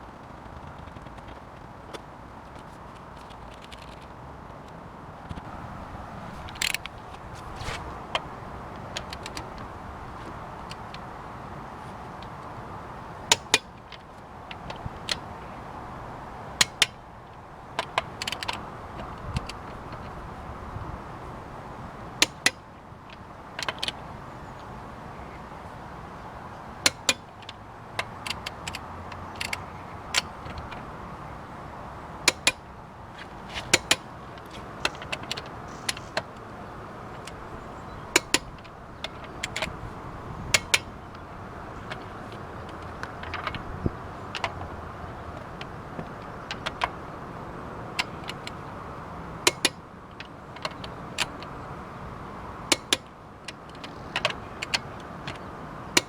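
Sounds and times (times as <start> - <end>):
steady background noise: 0.0 - 56.0
metallic clicks of hand tools: 8.2 - 9.7, 13.3 - 15.3, 16.6 - 20.1, 22.2 - 24.0, 26.8 - 30.9, 32.2 - 36.5, 37.1 - 47.0, 48.0 - 48.6, 49.4 - 51.6, 52.7 - 56.0.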